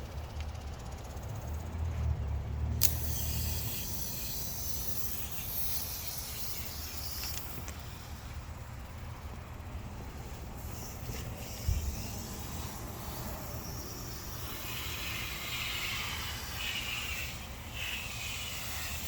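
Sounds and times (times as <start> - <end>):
high spray hiss: 10.6 - 19.0.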